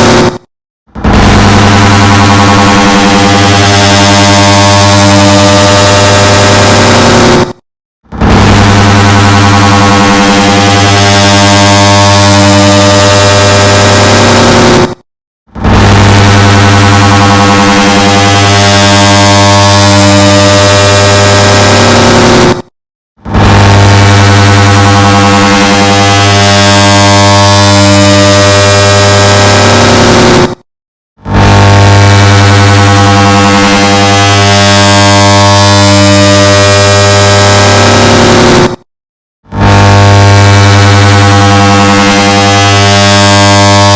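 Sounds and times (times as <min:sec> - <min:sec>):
distorted air conditioner drone: 0:08.2 - 0:14.8, 0:15.6 - 0:22.5, 0:23.3 - 0:30.4, 0:31.3 - 0:38.3, 0:39.6 - 0:43.9.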